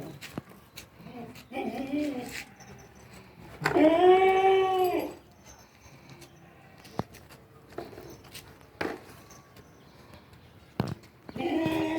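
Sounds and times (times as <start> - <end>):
goat bleating: 3.6 - 5.2, 11.4 - 11.9.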